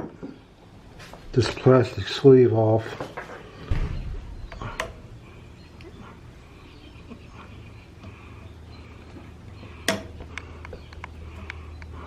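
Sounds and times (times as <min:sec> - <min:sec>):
steady low hum: 0:00.2 - 0:12.0
small clicks and rubbing: 0:09.0 - 0:12.0.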